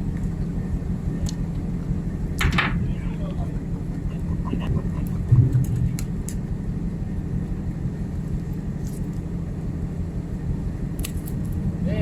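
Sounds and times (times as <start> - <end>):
ship machinery drone: 0.0 - 12.0
short low thump: 5.3 - 6.0.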